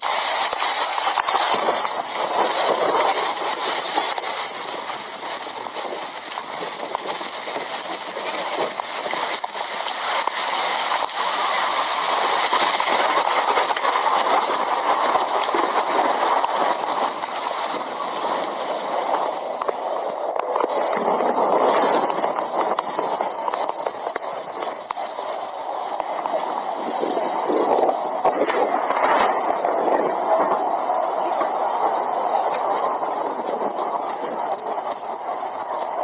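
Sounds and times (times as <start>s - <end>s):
thunderstorm rushing: 26.8s - 34.7s.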